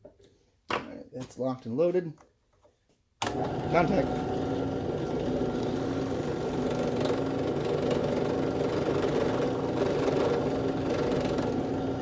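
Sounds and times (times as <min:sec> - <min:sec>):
electric drill whining: 0:03.2 - 0:12.0.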